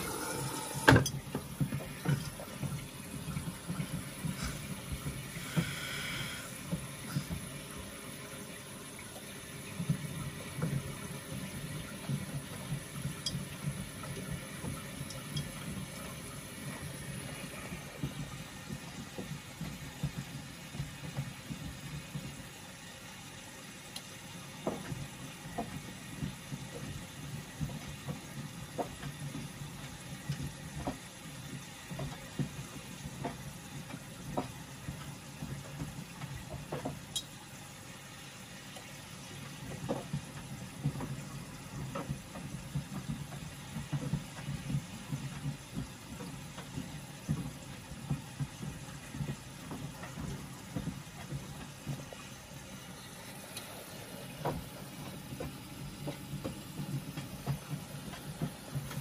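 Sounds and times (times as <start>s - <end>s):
washing machine hum: 0.0s - 59.0s
laundry knocking in drum: 39.6s - 52.2s.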